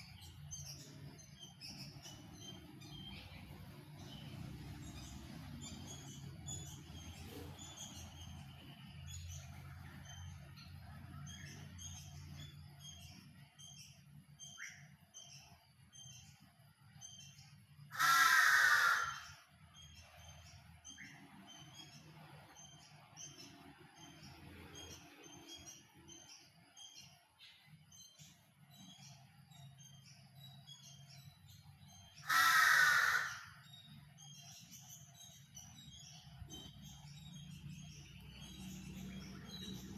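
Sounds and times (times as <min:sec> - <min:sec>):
small birds chirping: 0:00.0 - 0:39.9
loud harsh bird call: 0:17.9 - 0:19.5, 0:32.1 - 0:33.9.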